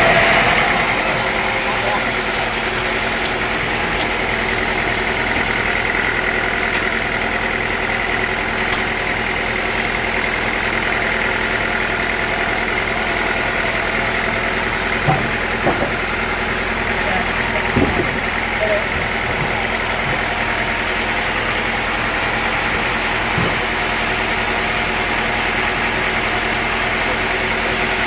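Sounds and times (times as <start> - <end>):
sawmill machinery running: 0.0 - 28.0
knocks: 15.0 - 16.1, 17.6 - 18.4.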